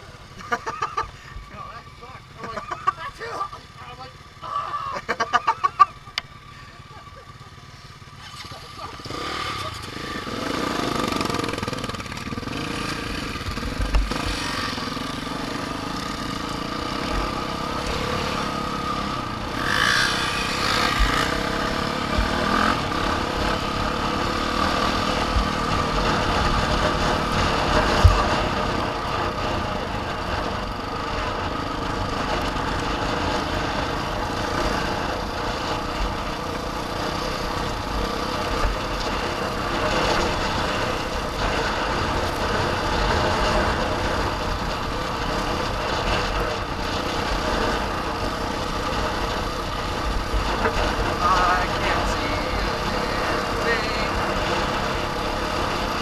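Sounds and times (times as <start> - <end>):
off-road vehicle engine running: 0.0 - 56.0.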